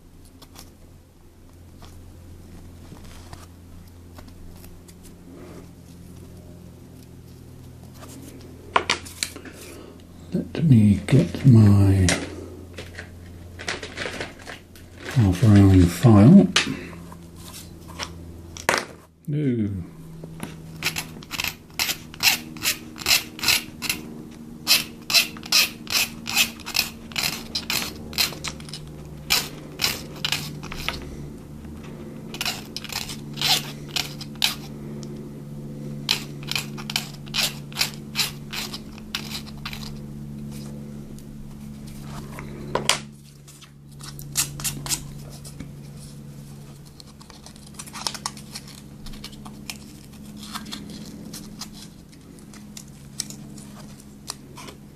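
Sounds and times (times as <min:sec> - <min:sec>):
steady low hum: 0:00.0 - 0:54.9
hand file rasping: 0:20.8 - 0:31.1, 0:32.3 - 0:34.8, 0:36.1 - 0:40.0.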